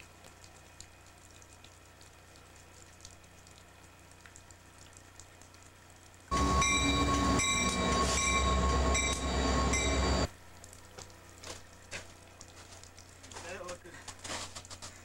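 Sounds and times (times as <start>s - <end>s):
freight train rumble: 6.3s - 10.3s.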